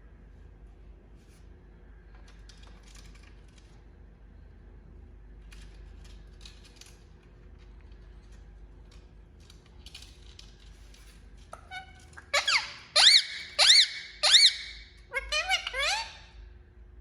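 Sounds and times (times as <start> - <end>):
faint clicks and scratches: 1.2 - 4.0, 5.4 - 12.3
parakeet shrill calls: 11.7 - 16.3.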